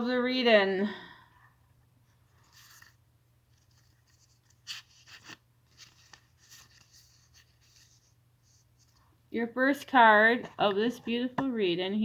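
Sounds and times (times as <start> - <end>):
cards rustling and tapping: 2.5 - 8.1.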